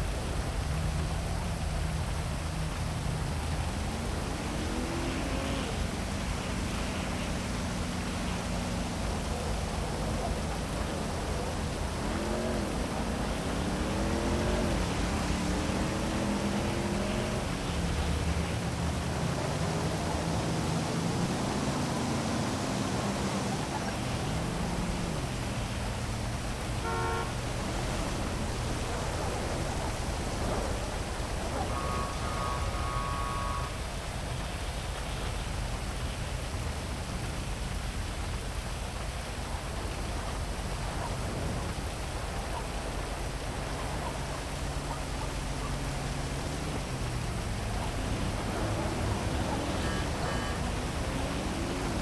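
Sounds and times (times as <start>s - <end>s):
car engines passing: 0.0s - 52.0s
heavy rain falling: 0.0s - 52.0s
car horn: 13.6s - 22.3s, 26.6s - 33.9s, 47.8s - 52.0s.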